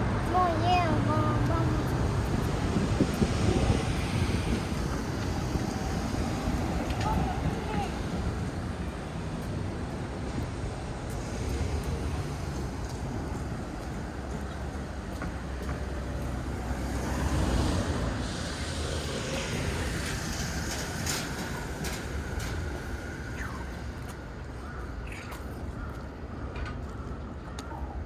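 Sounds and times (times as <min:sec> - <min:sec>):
traffic rumble: 0:00.0 - 0:28.0
vehicle passing: 0:11.2 - 0:23.9.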